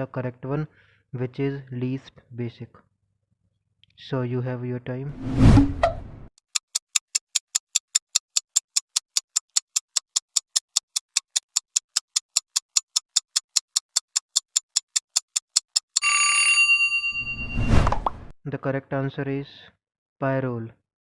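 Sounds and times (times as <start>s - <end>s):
rapid timer ticks: 6.4s - 16.1s.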